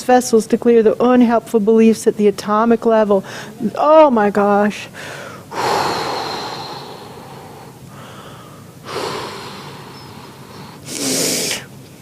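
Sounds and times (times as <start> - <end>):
person breathing heavily: 4.9 - 11.7.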